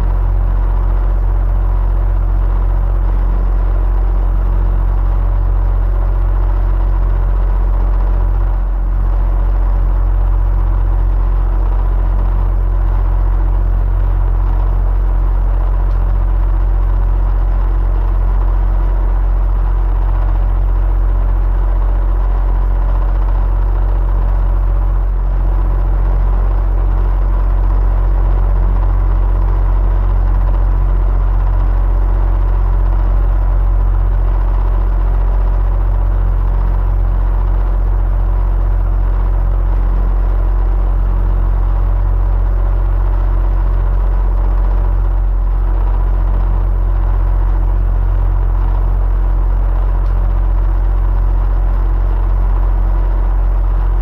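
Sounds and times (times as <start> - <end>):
electric fan air rumble: 0.0 - 54.0.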